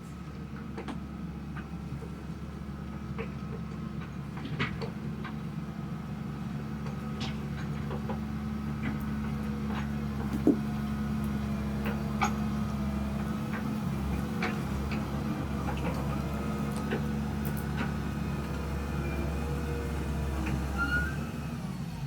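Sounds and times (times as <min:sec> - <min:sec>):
excavator engine running: 0:00.0 - 0:22.0.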